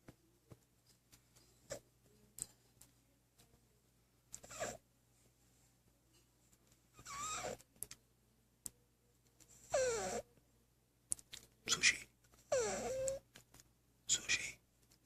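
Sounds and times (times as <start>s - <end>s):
cat snoring: 4.4s - 4.8s, 7.0s - 7.6s, 9.7s - 10.3s, 12.5s - 13.2s.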